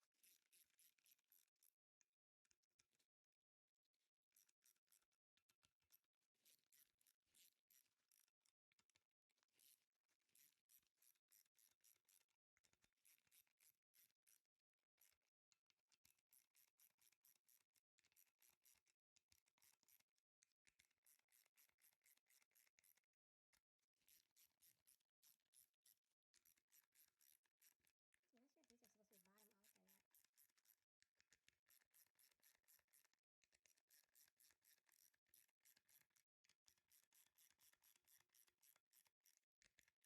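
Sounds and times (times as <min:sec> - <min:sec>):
rapid high-pitched scratchy ticking: 0:28.4 - 0:30.8.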